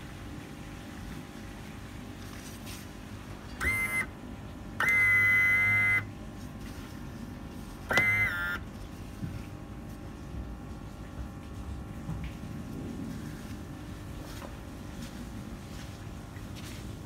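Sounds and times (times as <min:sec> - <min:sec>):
low steady hum: 0:00.0 - 0:17.0
electric buzzer tones: 0:03.6 - 0:04.2, 0:04.8 - 0:06.2, 0:07.9 - 0:08.7.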